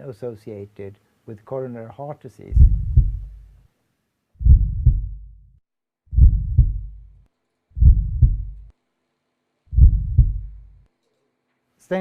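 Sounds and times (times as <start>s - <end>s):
heartbeat thumps: 2.5s - 3.6s, 4.4s - 5.5s, 6.1s - 7.2s, 7.8s - 8.7s, 9.7s - 10.8s.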